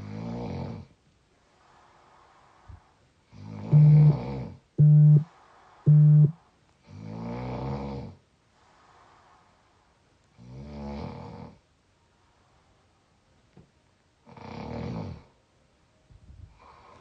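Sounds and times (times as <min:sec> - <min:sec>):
person snoring: 0:03.5 - 0:04.4
short steady beeps: 0:03.7 - 0:04.2, 0:04.8 - 0:05.3, 0:05.9 - 0:06.4.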